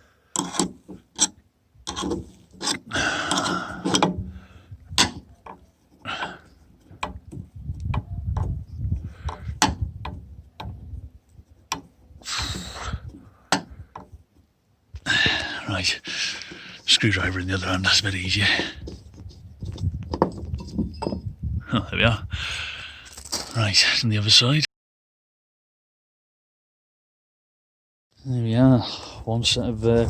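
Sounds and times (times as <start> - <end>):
screwdriver prying and scraping: 0.3 - 14.5, 17.8 - 21.3.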